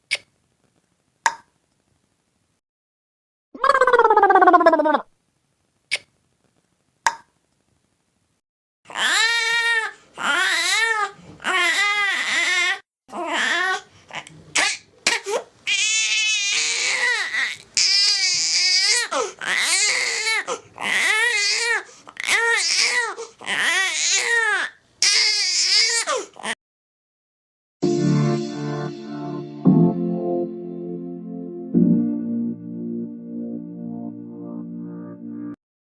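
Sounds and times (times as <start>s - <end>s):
baby crying: 8.9s - 13.9s, 14.6s - 26.6s.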